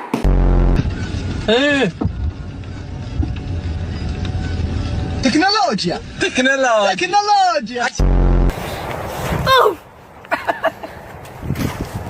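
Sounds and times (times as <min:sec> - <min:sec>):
low engine-like rumble: 0:00.3 - 0:06.8.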